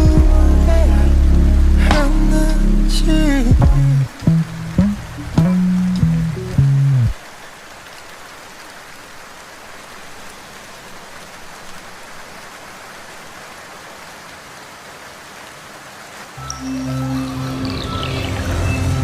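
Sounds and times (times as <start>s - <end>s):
music: 0.0s - 7.1s, 16.4s - 19.0s
steady rain falling: 0.0s - 19.0s.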